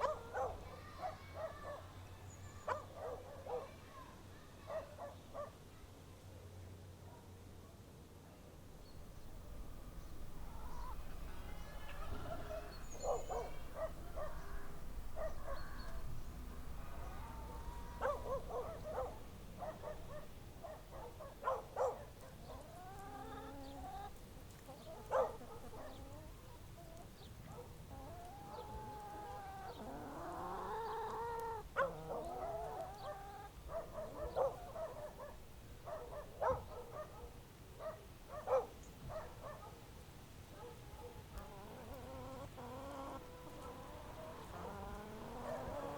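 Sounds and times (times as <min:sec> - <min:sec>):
low steady rumble: 0:08.8 - 0:20.4
chickens clucking: 0:09.1 - 0:20.3, 0:21.8 - 0:27.1, 0:27.8 - 0:33.6, 0:41.3 - 0:45.9.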